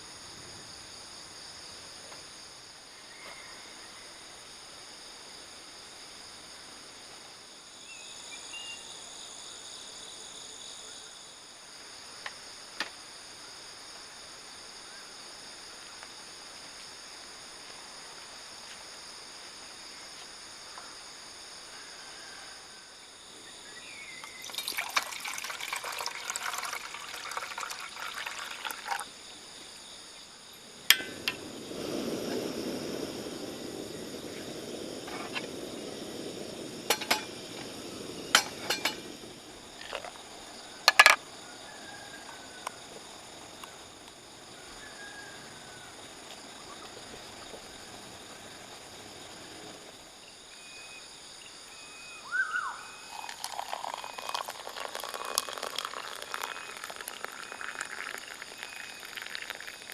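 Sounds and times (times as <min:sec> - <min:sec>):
high insect drone: 0:00.0 - 0:59.9
liquid pouring into container: 0:24.2 - 0:29.1, 0:53.1 - 0:59.9
clinks and handling noise: 0:30.9 - 0:31.4, 0:36.9 - 0:37.4, 0:38.3 - 0:39.1, 0:40.9 - 0:41.2.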